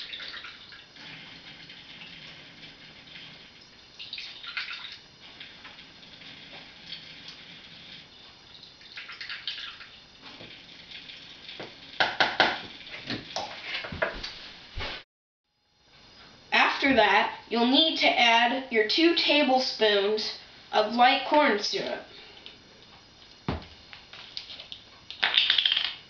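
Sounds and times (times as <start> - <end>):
water running from tap: 0.0 - 13.5.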